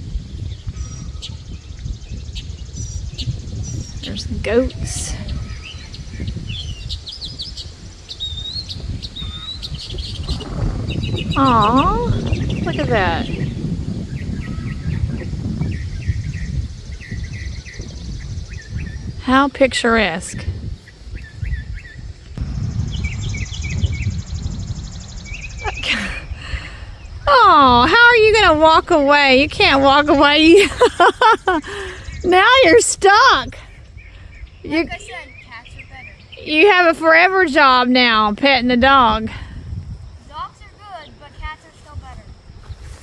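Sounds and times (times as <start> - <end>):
small birds chirping: 0.0 - 43.0
wind rumble on microphone: 0.0 - 43.0
insects buzzing trill: 0.5 - 43.0
low outdoor rumble: 22.4 - 30.5.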